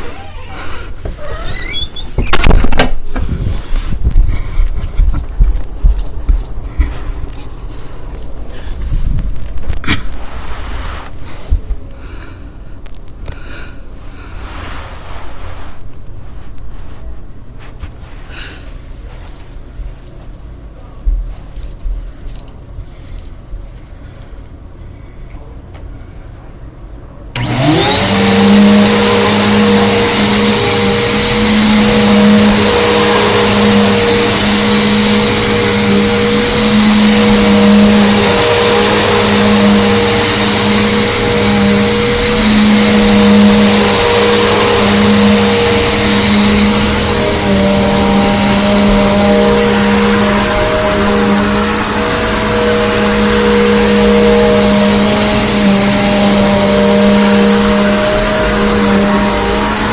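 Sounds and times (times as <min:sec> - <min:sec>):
vacuum cleaner running: 0:00.0 - 0:11.8, 0:13.4 - 0:15.9, 0:27.3 - 0:59.9.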